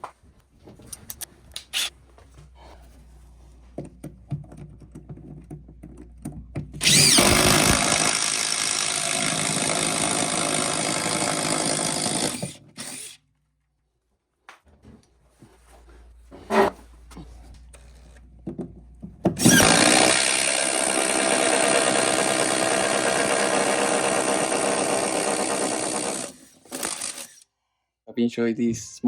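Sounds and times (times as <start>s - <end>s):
handling clicks and knocks: 3.7s - 6.8s
impact driver running: 6.8s - 13.2s, 19.4s - 27.4s.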